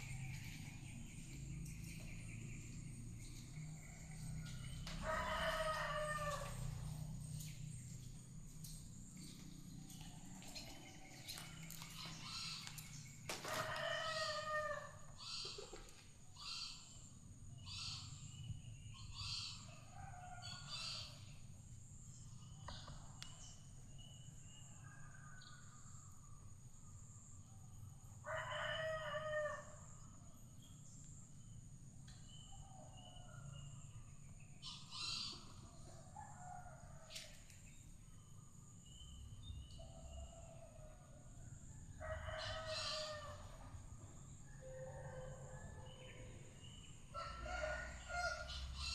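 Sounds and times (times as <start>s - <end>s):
bird calls and chirps: 0.0s - 26.2s, 29.9s - 41.0s, 42.3s - 48.9s
rooster crowing: 3.9s - 7.0s, 13.3s - 15.2s, 28.2s - 29.9s, 41.9s - 43.8s, 44.4s - 48.9s.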